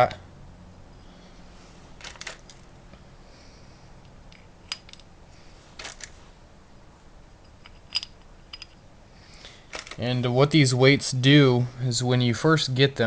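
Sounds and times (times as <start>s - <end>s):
light clicks of small weights: 7.4s - 8.8s.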